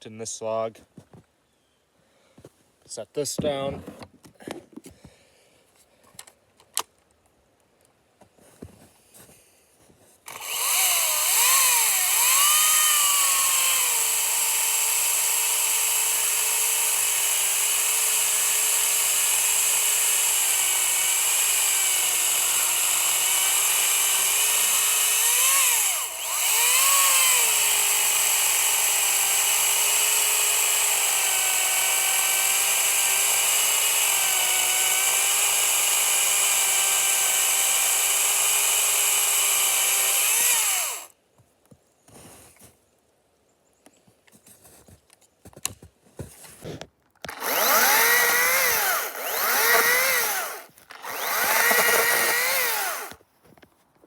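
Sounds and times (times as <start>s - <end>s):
chainsaw whining cutting log: 10.3s - 41.1s, 47.3s - 53.2s.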